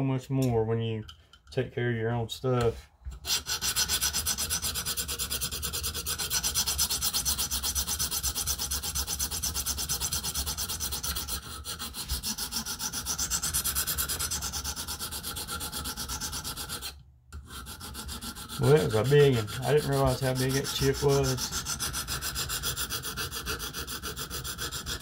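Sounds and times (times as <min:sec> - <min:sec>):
sharpening stone scraping knife edge: 0:08.5 - 0:25.0.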